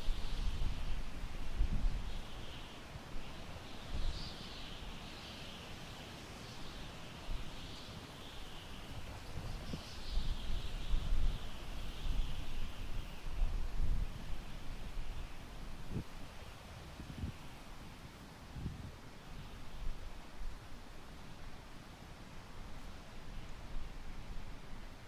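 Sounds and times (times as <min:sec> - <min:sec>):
wind blowing through grass: 0:00.0 - 0:25.0.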